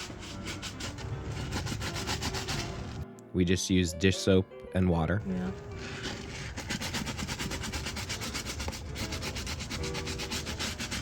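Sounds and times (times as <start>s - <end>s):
scrubbing an air conditioner filter: 0.0s - 3.0s, 5.5s - 11.0s.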